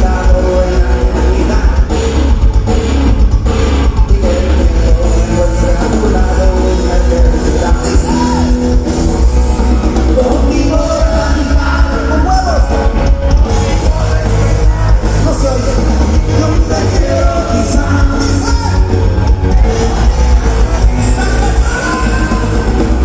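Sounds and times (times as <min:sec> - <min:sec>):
person singing: 0:00.0 - 0:02.3, 0:03.6 - 0:23.0
heavy bass: 0:00.0 - 0:23.0
live rock band: 0:00.0 - 0:23.0.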